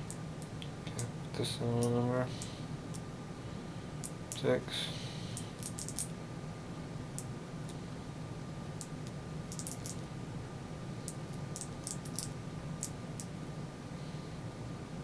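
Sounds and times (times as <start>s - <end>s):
steady low hum: 0.0s - 15.0s
padlock wheels clicking: 5.6s - 6.1s, 9.5s - 10.0s.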